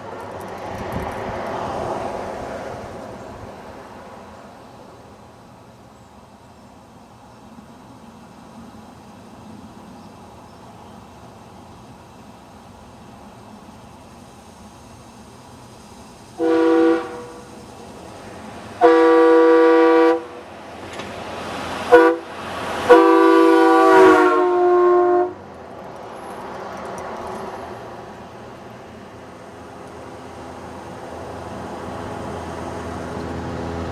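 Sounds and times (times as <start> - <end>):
train-style air horn blasts: 16.4 - 17.8, 18.8 - 20.5, 21.8 - 25.4.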